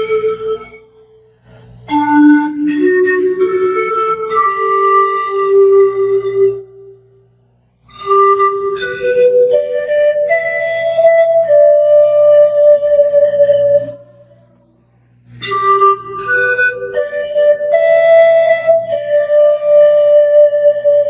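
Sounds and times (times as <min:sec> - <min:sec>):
pan flute melody: 0:00.0 - 0:07.2, 0:07.9 - 0:21.0.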